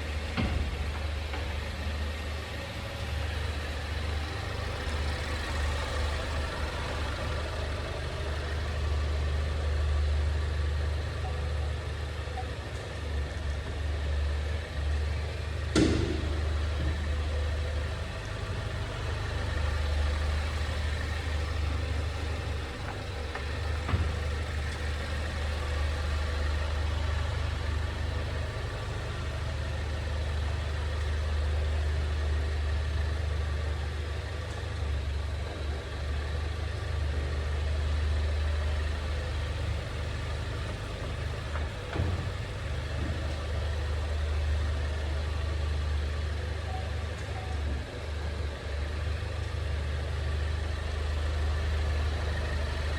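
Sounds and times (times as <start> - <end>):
car engine rumble from inside: 15.0 - 33.4.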